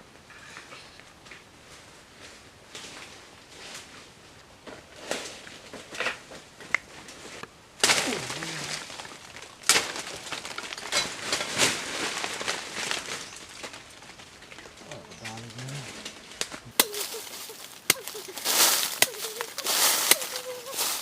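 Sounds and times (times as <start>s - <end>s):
crackling and rustling with snaps: 0.1s - 21.0s
dove cooing: 8.0s - 9.0s, 14.8s - 16.1s, 16.7s - 21.0s.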